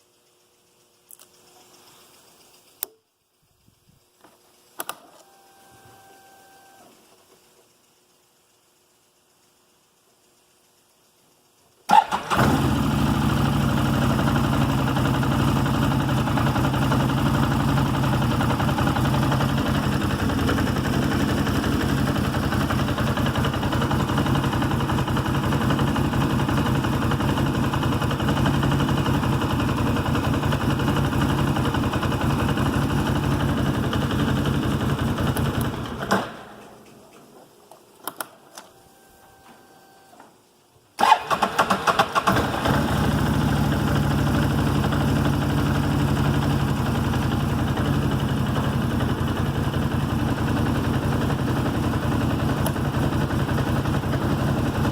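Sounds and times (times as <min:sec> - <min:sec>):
engine idling: 0:11.9 - 0:36.8, 0:41.0 - 0:54.9.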